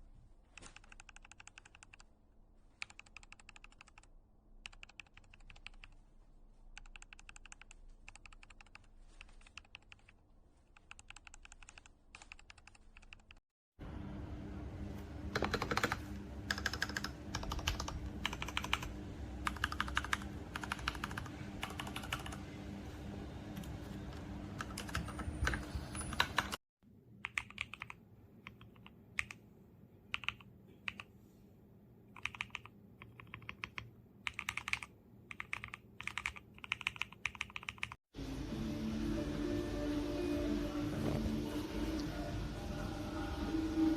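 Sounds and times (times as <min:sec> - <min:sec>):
mechanical keyboard typing: 0:00.6 - 0:02.1, 0:02.8 - 0:06.0, 0:06.8 - 0:10.2, 0:10.8 - 0:13.4, 0:15.3 - 0:22.4, 0:24.6 - 0:26.6, 0:27.2 - 0:29.4, 0:30.1 - 0:31.1, 0:32.2 - 0:38.0
steady hum: 0:13.8 - 0:25.6.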